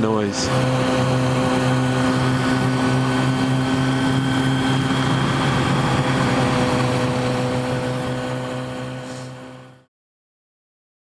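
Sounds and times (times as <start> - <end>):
motorcycle engine droning: 0.0 - 9.9.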